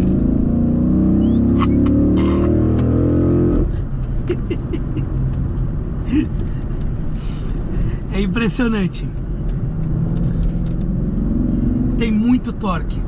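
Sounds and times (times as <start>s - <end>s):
car engine accelerating hard: 0.0s - 5.6s.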